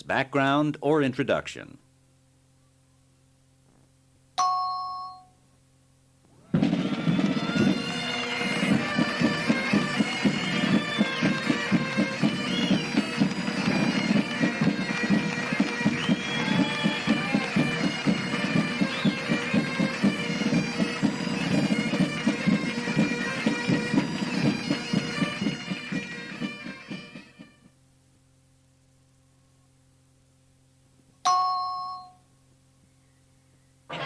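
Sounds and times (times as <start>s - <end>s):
drum beat: 6.4s - 27.6s
bagpipes playing over drone: 6.5s - 27.7s.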